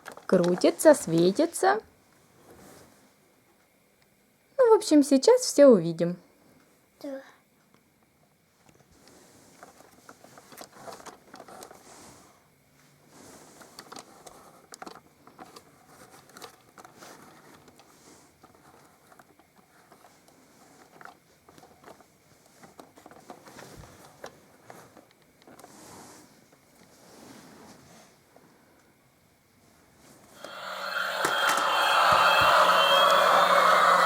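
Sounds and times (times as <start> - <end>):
plastic toy crinkling and clicking: 0.0 - 1.5, 9.6 - 11.8, 13.8 - 20.1, 20.8 - 23.6.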